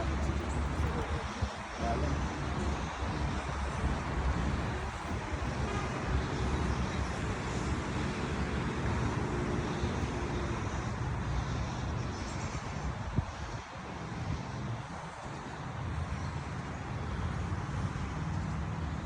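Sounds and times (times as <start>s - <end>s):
road traffic rumble: 0.0s - 19.0s.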